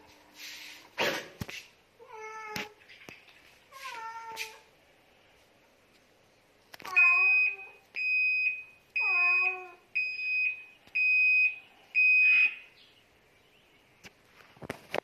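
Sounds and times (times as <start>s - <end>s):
washing machine high beeps: 6.9s - 12.7s.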